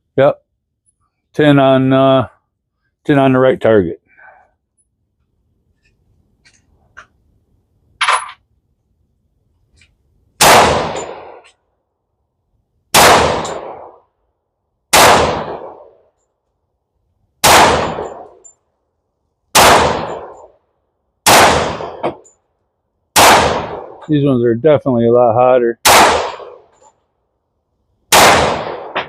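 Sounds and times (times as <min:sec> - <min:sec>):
pistol shots with echo: 0:10.4 - 0:11.4, 0:12.9 - 0:14.0, 0:14.9 - 0:15.9, 0:17.4 - 0:18.4, 0:19.5 - 0:20.4, 0:21.2 - 0:22.2, 0:23.2 - 0:24.0, 0:25.8 - 0:26.6, 0:28.1 - 0:29.0.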